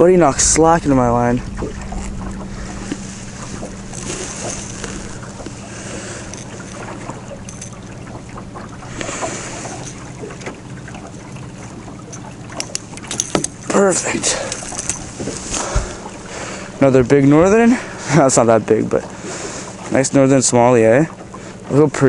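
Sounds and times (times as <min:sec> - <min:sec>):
wind on the microphone: 0:00.0 - 0:08.0
steady low hum: 0:00.0 - 0:22.0
water washing: 0:00.0 - 0:22.0.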